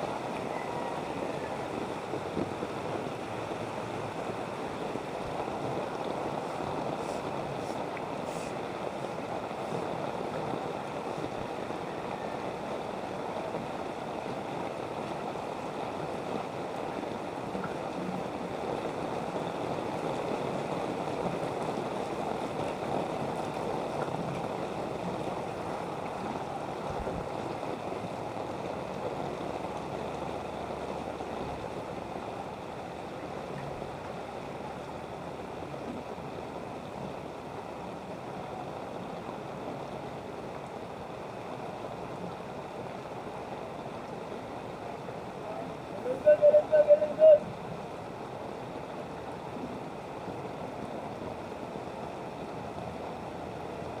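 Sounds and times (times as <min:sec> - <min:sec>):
floodwater rushing: 0:00.0 - 0:54.0.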